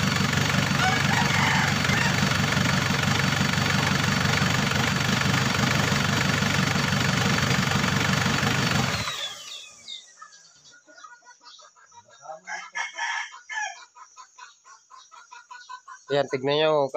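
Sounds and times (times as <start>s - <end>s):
diesel engine idling: 0.0s - 10.0s.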